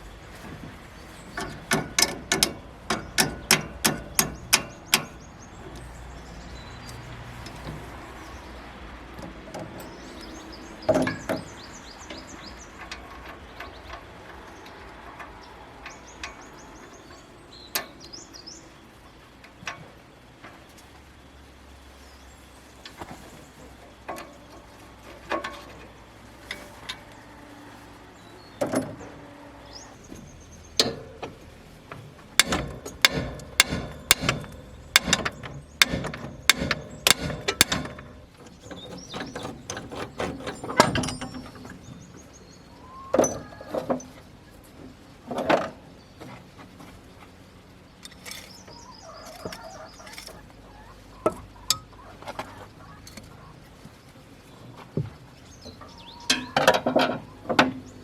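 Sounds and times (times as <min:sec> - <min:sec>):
hand tools knocking on metal: 0:00.4 - 0:08.2, 0:09.1 - 0:18.0, 0:30.7 - 0:42.1.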